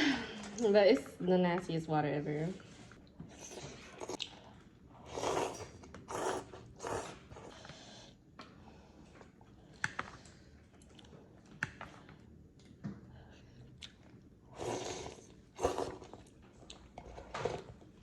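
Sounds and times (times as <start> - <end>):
person chewing: 3.3 - 7.6.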